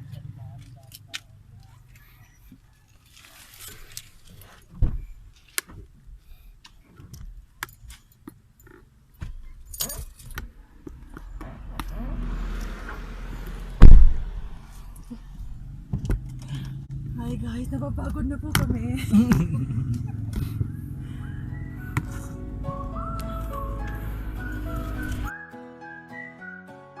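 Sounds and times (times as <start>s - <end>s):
heavy thump: 13.8s - 14.6s.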